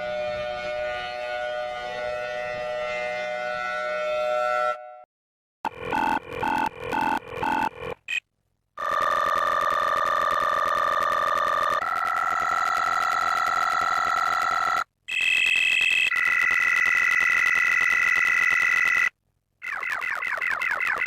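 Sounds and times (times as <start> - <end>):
electronic alarm tones: 5.7 - 7.8, 8.8 - 19.1.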